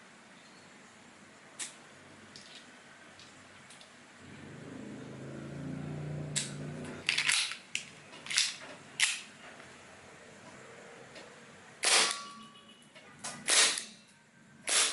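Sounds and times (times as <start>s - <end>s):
airsoft pistol shots: 11.8s - 12.3s, 13.4s - 13.9s, 14.7s - 14.9s.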